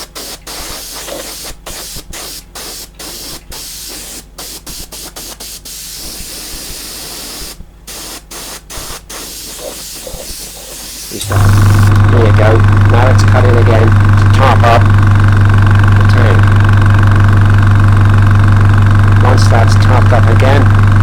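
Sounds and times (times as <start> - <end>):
airbrush hissing: 0.0 - 12.2.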